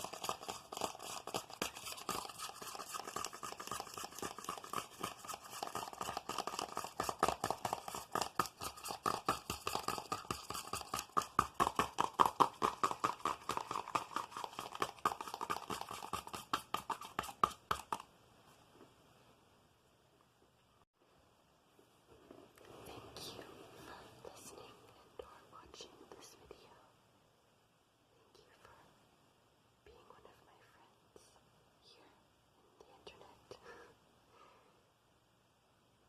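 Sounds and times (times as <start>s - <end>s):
rapid finger tapping: 0.0s - 18.1s.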